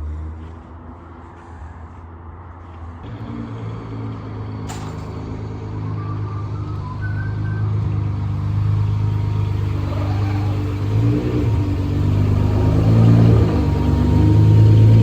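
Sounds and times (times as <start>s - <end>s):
car engine revving: 3.0s - 15.0s.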